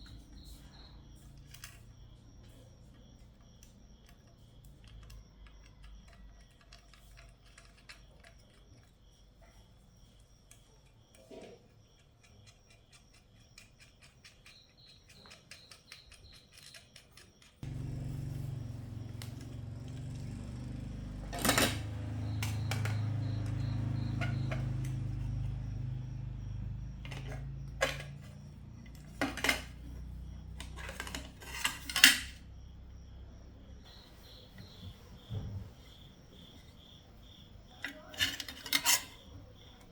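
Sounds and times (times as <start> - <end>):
low electrical hum: 17.6 - 38.6.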